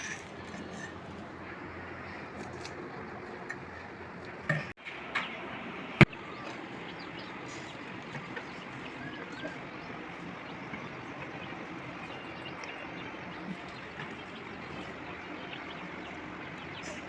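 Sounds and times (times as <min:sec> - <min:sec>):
faint bird chirps: 0:06.0 - 0:17.0.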